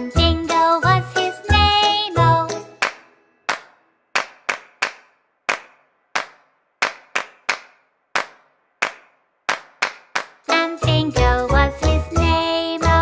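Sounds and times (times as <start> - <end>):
toy children's melody: 0.0 - 3.2, 10.4 - 13.0.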